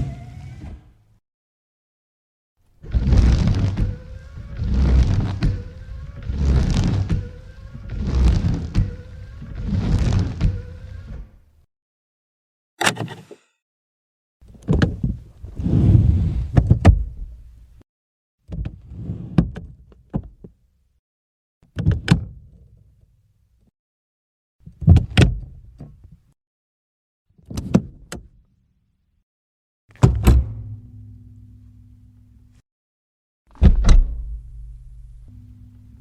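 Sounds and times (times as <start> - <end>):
car door latch clicks and thuds: 30.0 - 30.7
steady low hum: 34.2 - 36.0.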